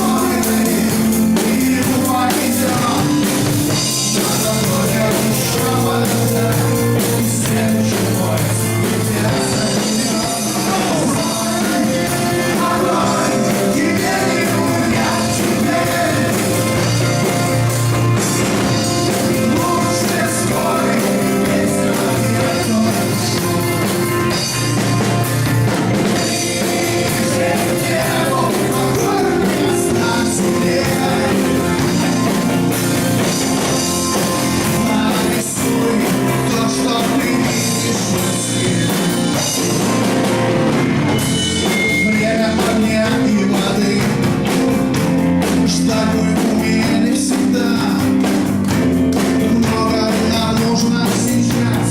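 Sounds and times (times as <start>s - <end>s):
rock band playing: 0.0s - 51.9s.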